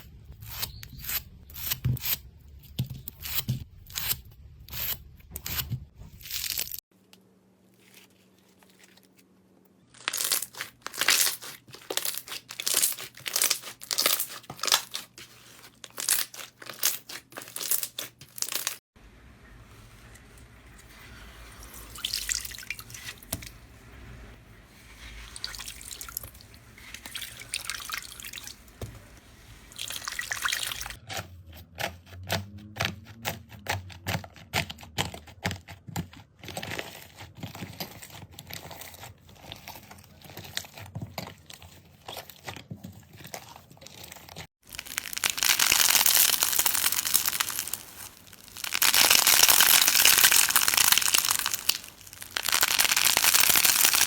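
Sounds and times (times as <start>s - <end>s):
crackly crunching: 7.7s - 18.8s, 36.5s - 54.0s.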